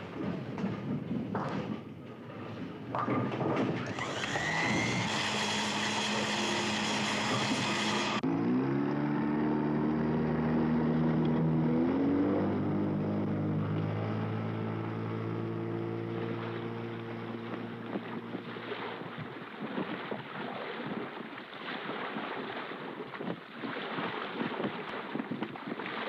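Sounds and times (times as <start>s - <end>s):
engine running: 0.0s - 19.4s
wind and water spray rushing: 3.8s - 8.2s, 16.2s - 26.0s.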